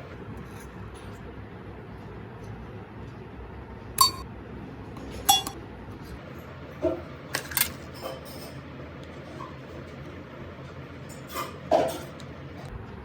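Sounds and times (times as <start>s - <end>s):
hard objects clinking together: 4.0s - 4.2s, 5.2s - 5.6s.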